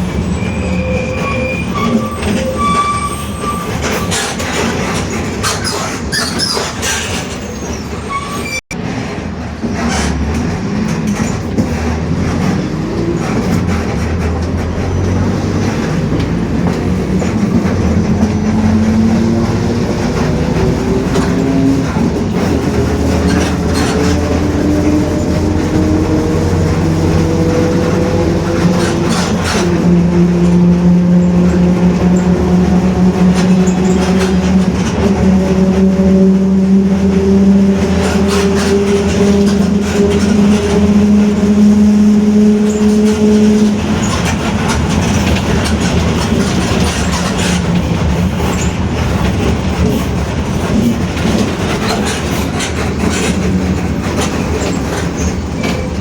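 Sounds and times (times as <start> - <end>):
bus diesel engine running: 0.0 - 56.0
differential whining: 12.5 - 49.4.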